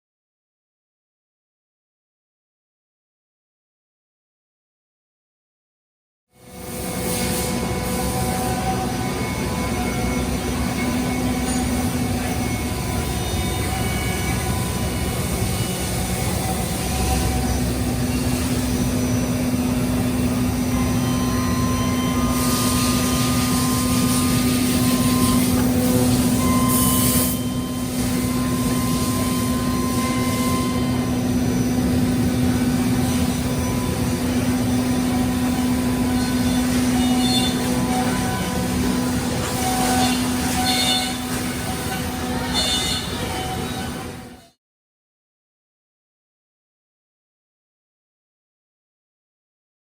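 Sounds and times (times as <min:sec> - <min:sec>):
milling machine hum: 0:06.4 - 0:44.4
whining tones: 0:06.6 - 0:44.5.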